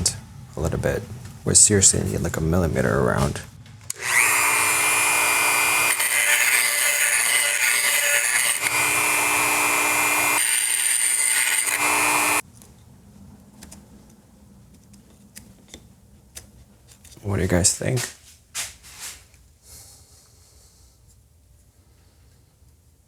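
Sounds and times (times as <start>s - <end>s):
handheld power tool boring: 3.9s - 12.4s.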